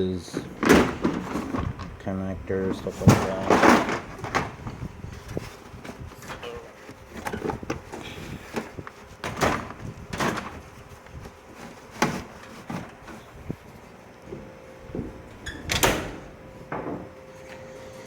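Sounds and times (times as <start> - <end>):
metal drawers sliding: 0.3 - 1.9, 2.7 - 4.7
tools knocking and clunking: 16.7 - 17.1.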